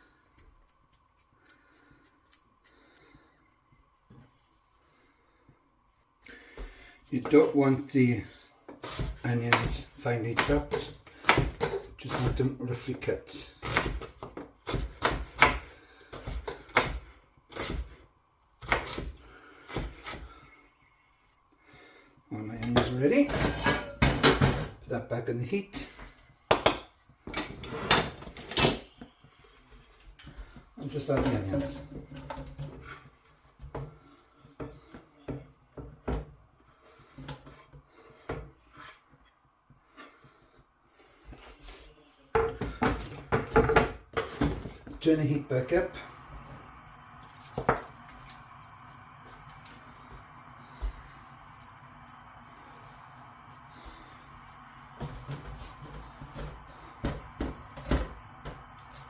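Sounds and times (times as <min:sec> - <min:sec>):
knife chopping onion on board: 0:08.8 - 0:12.4, 0:13.6 - 0:18.0, 0:18.6 - 0:20.2.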